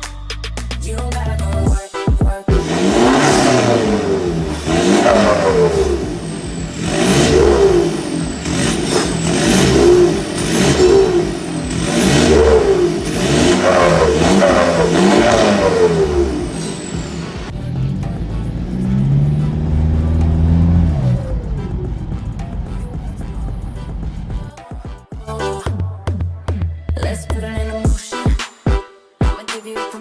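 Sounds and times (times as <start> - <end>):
diesel engine revving: 2.5 - 24.5.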